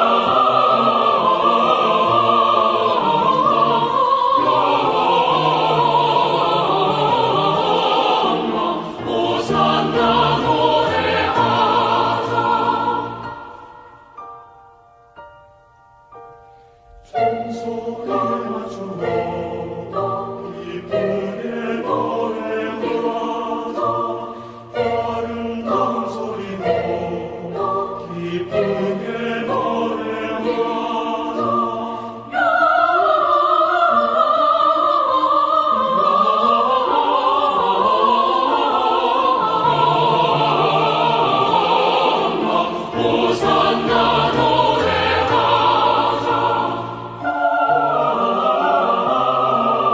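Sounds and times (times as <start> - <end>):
women's choir singing: 0.0 - 14.4, 17.0 - 49.9
musical accompaniment: 0.0 - 49.9.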